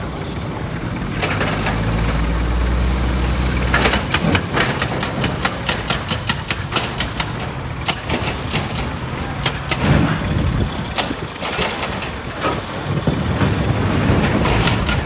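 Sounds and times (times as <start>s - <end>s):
heavy machinery rumbling: 0.0s - 15.0s.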